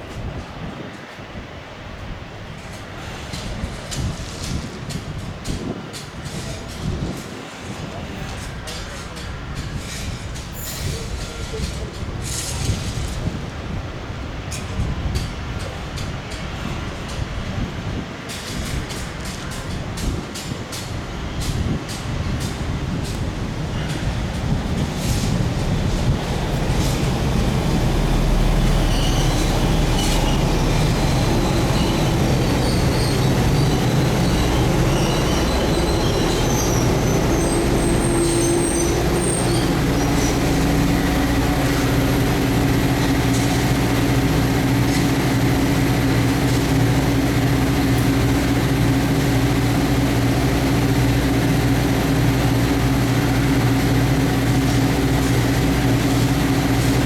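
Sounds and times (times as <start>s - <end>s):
jet engines running: 22.4s - 57.0s.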